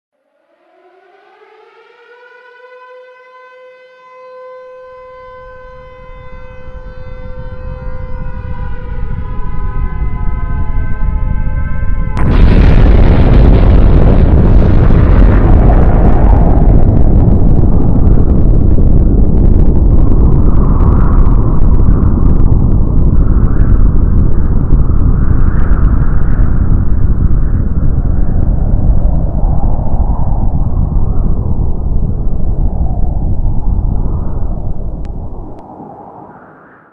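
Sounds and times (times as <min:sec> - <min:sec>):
air-raid siren wailing: 0:00.2 - 0:18.7
low rumble: 0:04.8 - 0:36.9
crackles: 0:12.0 - 0:36.9.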